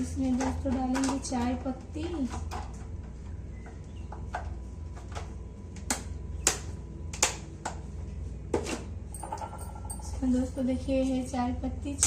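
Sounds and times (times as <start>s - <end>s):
kitchen utensils clicking and tapping: 0.0s - 2.8s
steady low hum: 0.0s - 12.0s.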